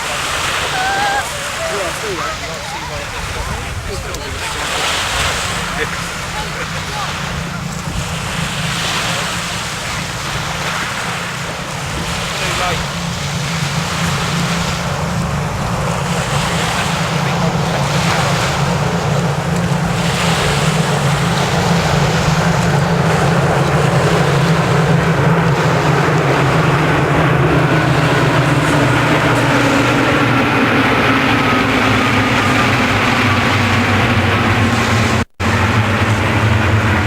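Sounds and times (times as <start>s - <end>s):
low engine drone: 0.0s - 37.0s.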